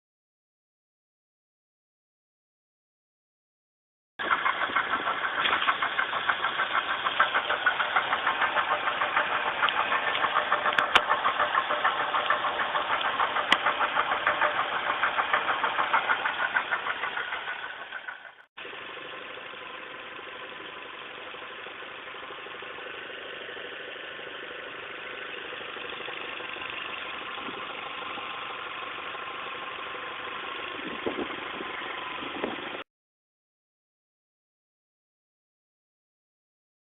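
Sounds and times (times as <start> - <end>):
engine running steadily: 4.2 - 32.8
engine with loud pulsing noise: 4.2 - 32.8.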